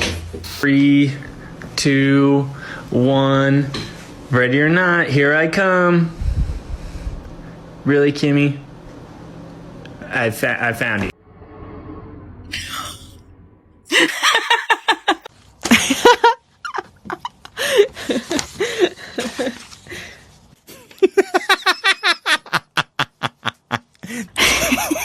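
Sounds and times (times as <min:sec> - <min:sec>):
person laughing: 0:13.9 - 0:19.7, 0:20.7 - 0:25.0.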